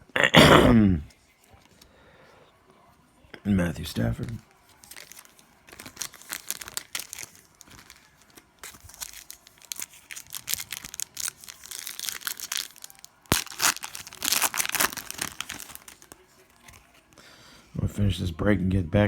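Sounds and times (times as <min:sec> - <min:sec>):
card pack wrapper crinkling: 0:04.2 - 0:17.0
cards being handled: 0:04.2 - 0:17.2.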